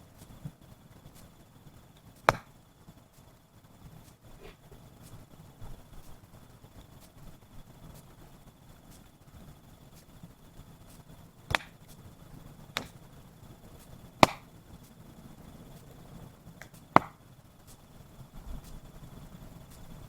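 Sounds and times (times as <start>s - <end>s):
firewood being chopped: 2.0s - 2.6s, 11.5s - 12.0s, 12.7s - 13.1s, 13.8s - 14.8s, 16.6s - 17.8s.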